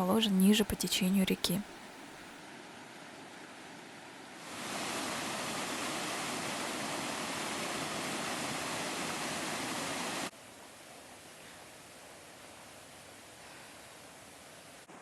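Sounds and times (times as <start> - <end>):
waterfall rushing: 4.4 - 10.3.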